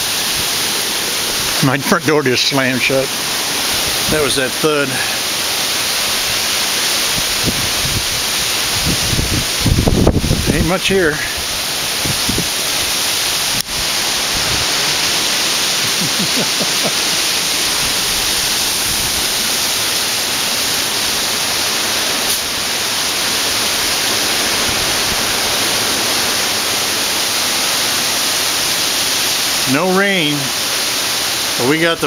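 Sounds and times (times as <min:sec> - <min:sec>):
strong wind through trees: 0:00.0 - 0:32.0.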